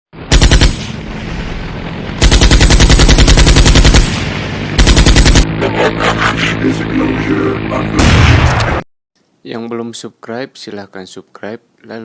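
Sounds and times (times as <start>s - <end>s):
low hum: 0.2s - 8.8s
machine-gun fire: 0.3s - 1.0s, 2.2s - 5.6s, 8.0s - 8.8s.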